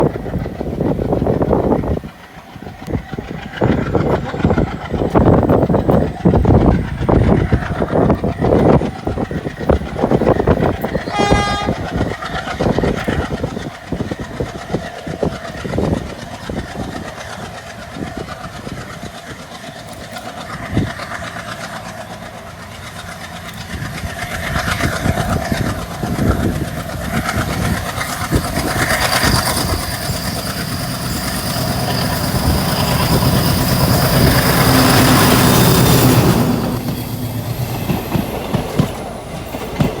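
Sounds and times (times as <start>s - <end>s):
diesel locomotive chugging: 0.0s - 40.0s
train wheels clattering over rails: 0.0s - 40.0s
train horn blast: 11.0s - 12.1s.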